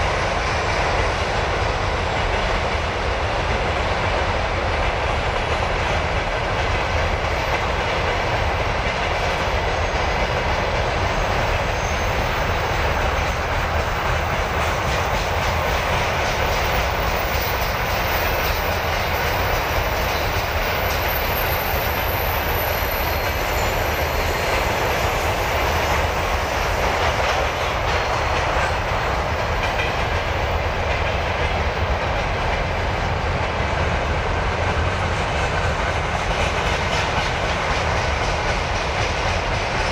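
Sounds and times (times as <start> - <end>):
freight train wheels clattering: 0.0 - 39.9.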